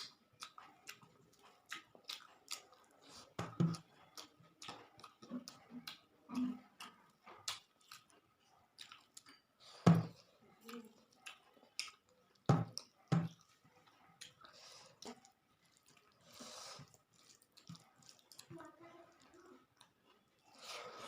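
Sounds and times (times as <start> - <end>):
person chewing food: 0.0 - 21.0
breathing: 14.4 - 15.1, 16.2 - 17.0.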